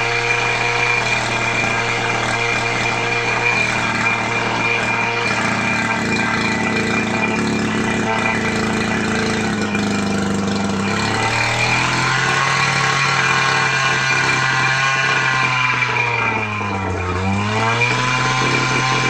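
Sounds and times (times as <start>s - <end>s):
small petrol engine running: 0.0s - 19.0s.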